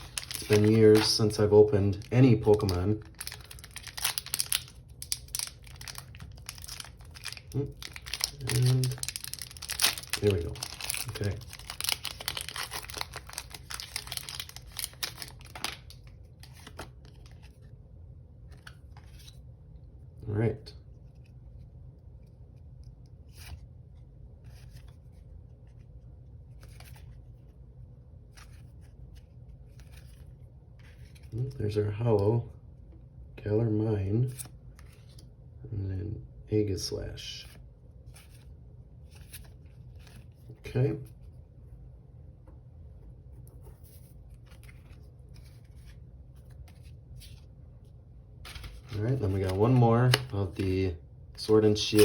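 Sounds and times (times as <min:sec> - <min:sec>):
cards and foil packs rustling: 0:00.0 - 0:17.6, 0:48.4 - 0:52.0
low steady hum: 0:00.0 - 0:52.0.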